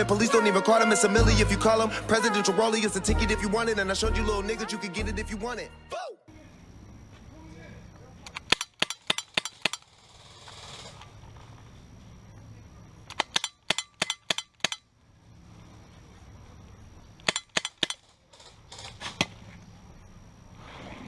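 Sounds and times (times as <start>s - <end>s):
airsoft gun shots: 17.2s - 18.1s.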